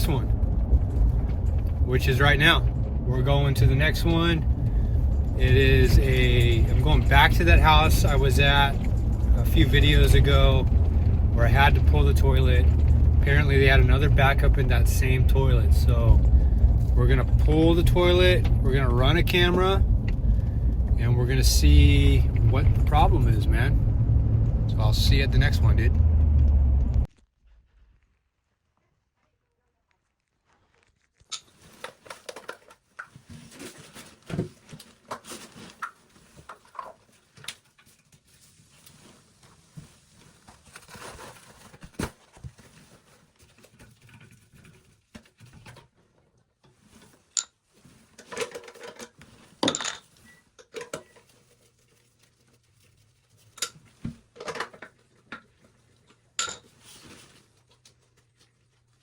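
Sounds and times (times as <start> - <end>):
faint low hum: 0.0 - 27.1.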